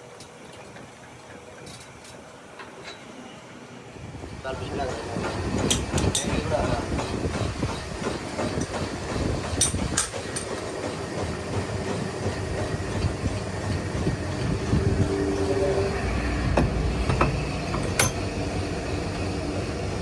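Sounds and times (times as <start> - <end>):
milling machine rumble and clatter: 4.0 - 20.0.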